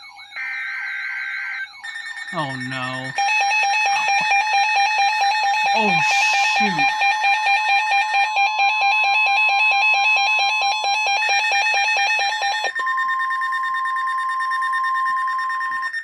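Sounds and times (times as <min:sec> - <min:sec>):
steady warning tone: 0:01.7 - 0:15.6
rapid electronic beeping: 0:02.3 - 0:07.5.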